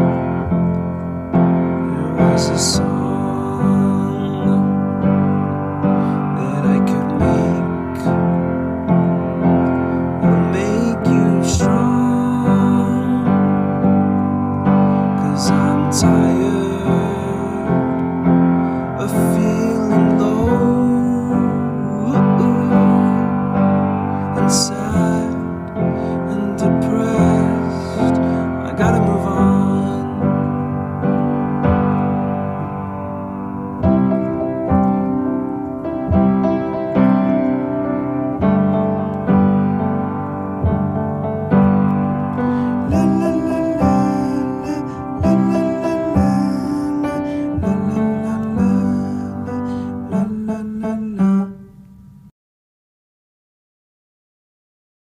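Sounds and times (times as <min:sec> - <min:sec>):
piano-led instrumental pop music: 0:00.0 - 0:51.9.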